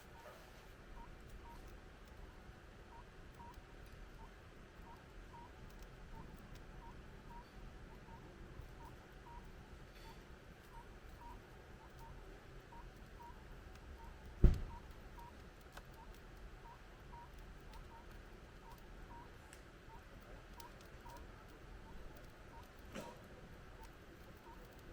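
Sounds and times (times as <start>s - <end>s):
faint ticks: 1.0s - 24.9s
sharp thump: 14.4s - 14.7s.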